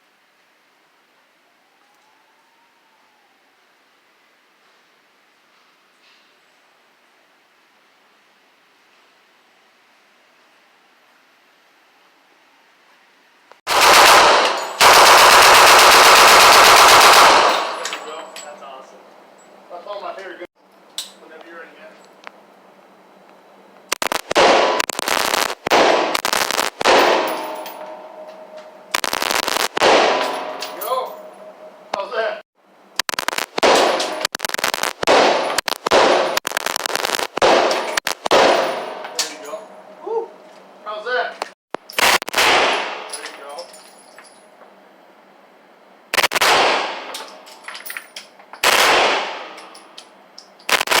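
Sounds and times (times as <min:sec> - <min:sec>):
automatic gunfire bursts: 0:13.7 - 0:17.8, 0:24.0 - 0:27.3, 0:33.1 - 0:38.6, 0:46.2 - 0:47.1, 0:48.6 - 0:49.5, 0:50.7 - 0:51.0
brass casings clinking: 0:13.7 - 0:19.7, 0:24.1 - 0:32.0, 0:33.2 - 0:39.9, 0:41.8 - 0:44.6
gunshot echo: 0:16.7 - 0:18.2, 0:24.1 - 0:28.3, 0:29.0 - 0:31.1, 0:33.4 - 0:36.4, 0:37.0 - 0:39.2, 0:42.0 - 0:43.2, 0:46.2 - 0:47.1.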